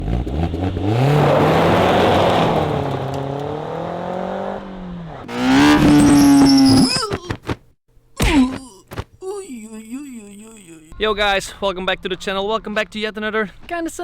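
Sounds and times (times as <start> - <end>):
car engine revving through exhaust: 0.0 - 6.8.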